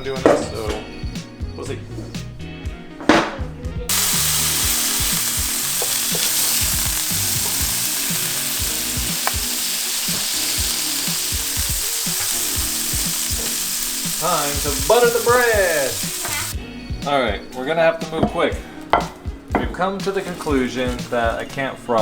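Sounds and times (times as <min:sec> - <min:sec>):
meat sizzling in a pan: 0:03.9 - 0:16.6, 0:18.6 - 0:21.5.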